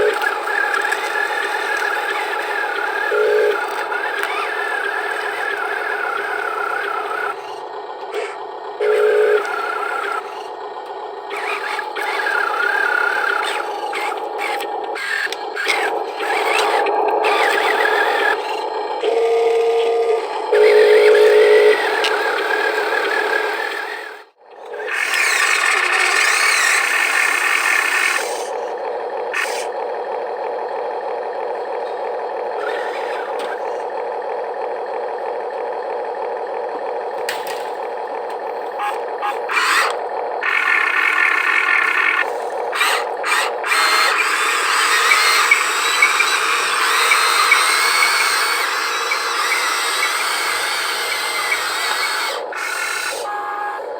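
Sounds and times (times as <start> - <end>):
small electric motors whining: 0.0 - 53.9.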